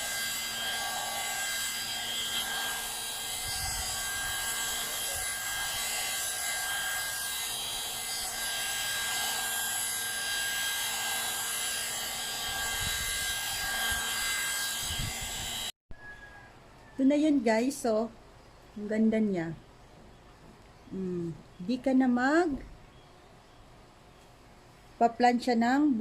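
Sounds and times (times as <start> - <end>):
hair dryer brush whirring: 0.0 - 15.7.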